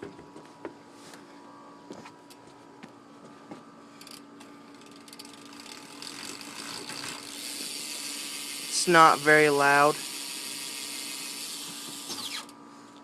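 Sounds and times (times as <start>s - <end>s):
bike hub ticking while freewheeling: 4.0s - 12.5s.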